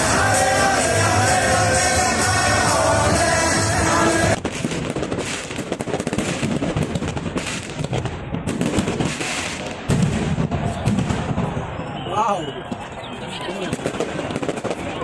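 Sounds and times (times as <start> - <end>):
music: 0.0 - 4.4
fireworks crackling: 0.0 - 15.0.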